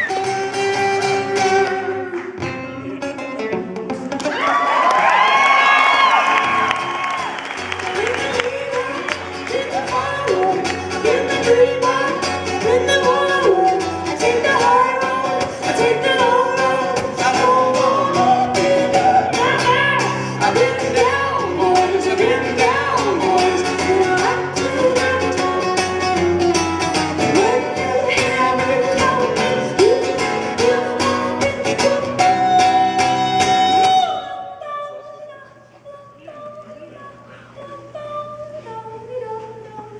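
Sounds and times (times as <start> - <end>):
woman singing wordless melody: 7.8 - 26.2, 27.2 - 39.9.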